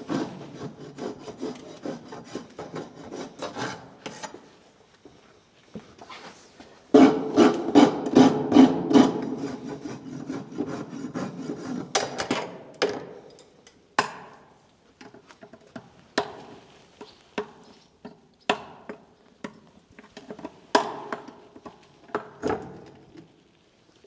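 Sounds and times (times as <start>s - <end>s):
rasp filing a hoof: 0.0s - 4.5s, 6.1s - 12.1s.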